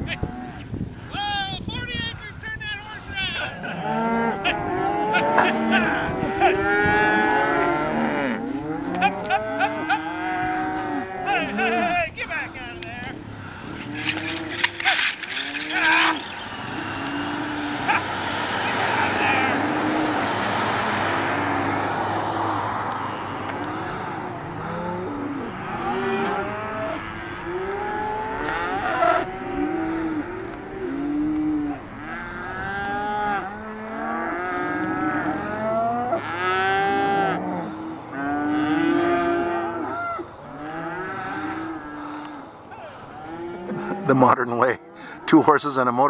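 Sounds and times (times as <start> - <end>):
cattle mooing and bawling: 3.4 - 12.1, 12.7 - 45.2
rushing noise: 13.4 - 27.5.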